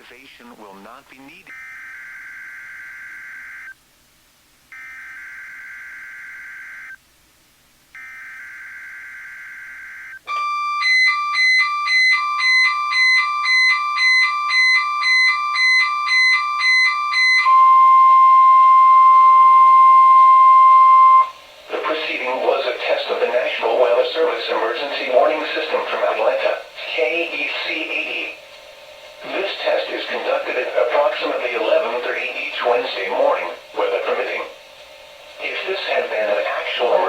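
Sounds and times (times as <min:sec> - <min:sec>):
steady warning alarm tone: 0:01.5 - 0:03.8, 0:04.7 - 0:07.0, 0:08.0 - 0:37.0
radio alert beeping: 0:29.2 - 0:34.6.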